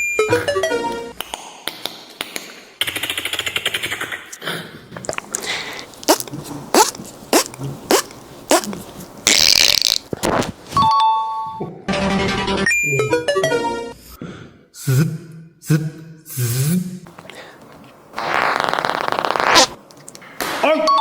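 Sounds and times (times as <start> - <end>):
beatbox mouth sound effects: 2.3 - 4.4, 5.0 - 10.4, 18.2 - 19.8.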